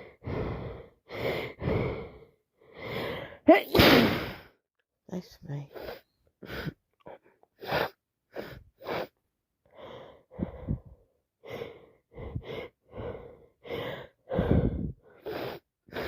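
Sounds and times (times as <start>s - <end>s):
woman sneezing: 3.5s - 4.4s.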